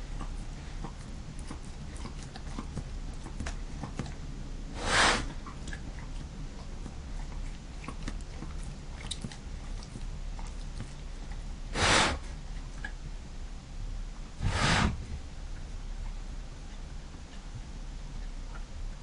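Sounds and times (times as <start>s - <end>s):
pet sneezing: 4.8s - 5.4s, 11.7s - 12.2s, 14.4s - 15.0s.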